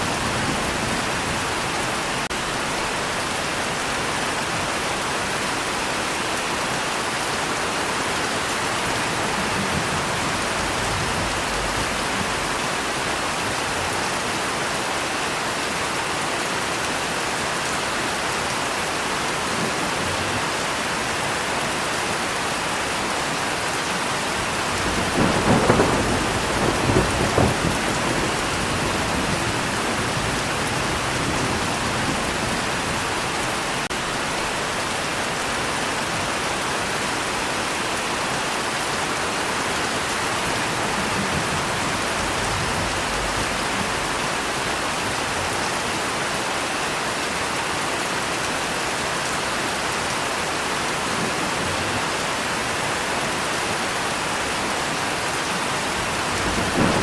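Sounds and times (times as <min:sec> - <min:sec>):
heavy rain: 0:00.0 - 0:57.0
thunder rumbling: 0:08.9 - 0:13.6, 0:24.4 - 0:34.7, 0:40.5 - 0:45.5, 0:55.9 - 0:57.0
thunderclap: 0:24.6 - 0:33.9, 0:40.7 - 0:44.7, 0:56.0 - 0:57.0.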